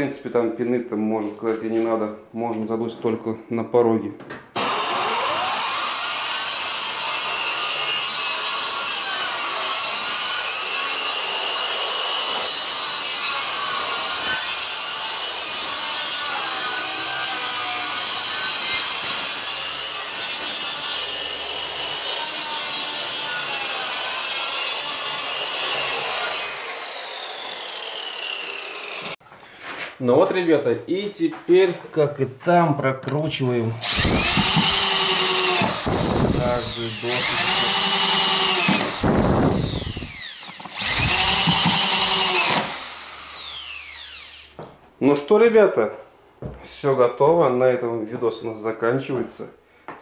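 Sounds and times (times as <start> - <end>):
electric saw cutting wood: 4.6 - 29.2, 33.8 - 44.6.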